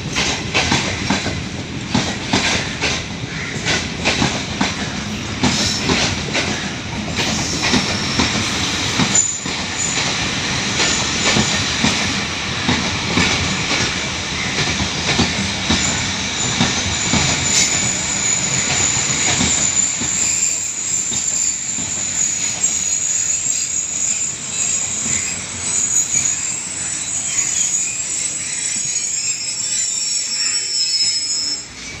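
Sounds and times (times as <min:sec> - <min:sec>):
train wheels knocking on rail joints: 0:00.0 - 0:26.4
high-pitched wheel squeal: 0:17.0 - 0:32.0.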